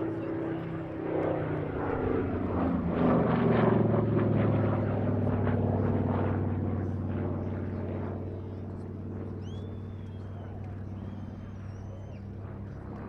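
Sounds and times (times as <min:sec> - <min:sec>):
propeller plane engine drone: 0:00.0 - 0:13.0.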